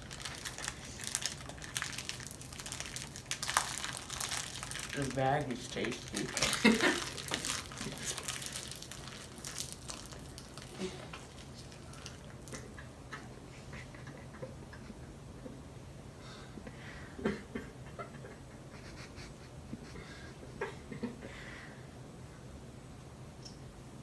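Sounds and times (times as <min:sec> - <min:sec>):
paper bag rustling: 0:00.0 - 0:12.4
low room hum: 0:00.0 - 0:24.0.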